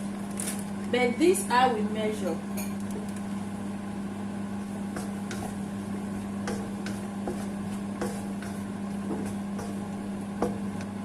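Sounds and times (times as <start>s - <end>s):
steady low hum: 0.0s - 11.0s
chicken frying: 2.8s - 11.0s.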